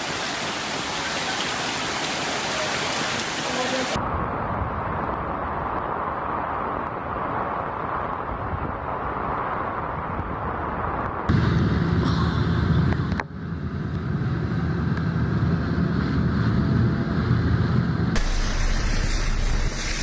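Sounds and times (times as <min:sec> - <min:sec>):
outdoor rushing noise: 0:03.9 - 0:20.0.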